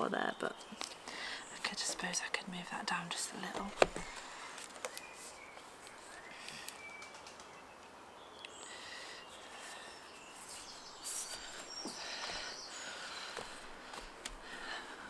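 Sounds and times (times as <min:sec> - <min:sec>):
birds singing: 0:00.0 - 0:15.0
paper rustling: 0:03.4 - 0:06.2.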